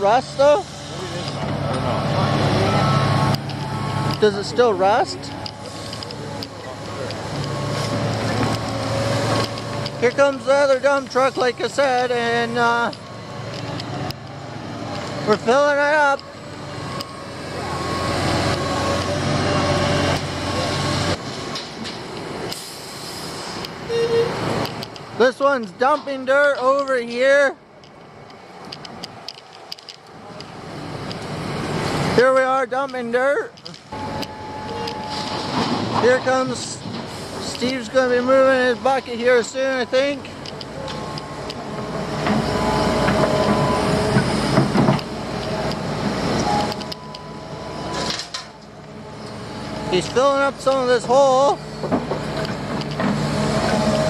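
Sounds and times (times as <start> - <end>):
heavy machinery diesel engines: 0.0 - 54.0
metallic squealing and clanking: 23.4 - 24.6, 33.9 - 54.0.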